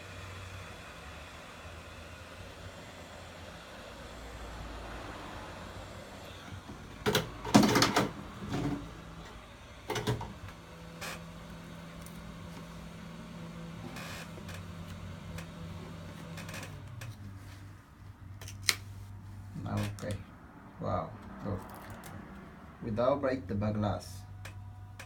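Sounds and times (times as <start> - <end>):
phone and tools clattering: 7.0 - 8.8.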